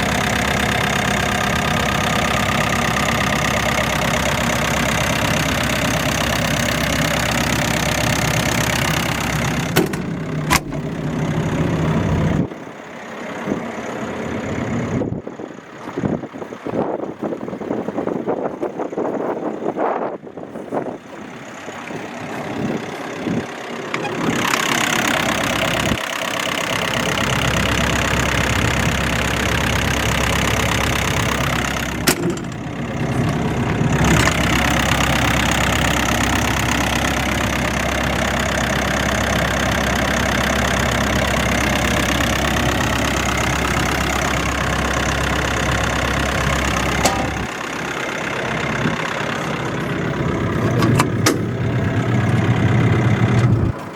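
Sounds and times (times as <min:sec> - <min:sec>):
diesel generator engine humming: 0:00.0 - 0:53.9
sharp click: 0:47.0 - 0:47.5.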